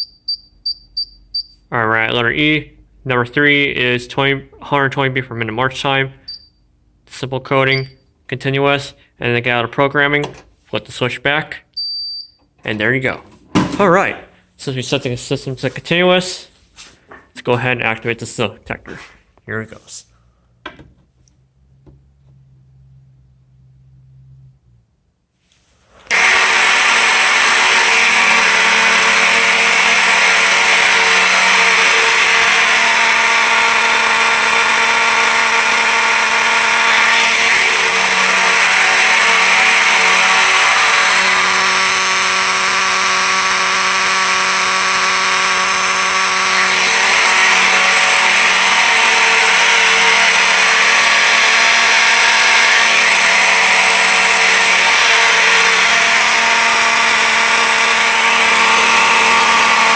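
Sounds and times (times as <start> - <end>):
fire alarm horns buzzing: 26.1 - 59.9.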